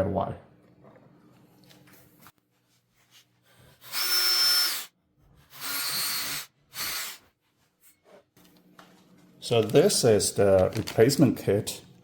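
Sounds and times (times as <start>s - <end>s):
power drill whirring: 3.7s - 7.3s.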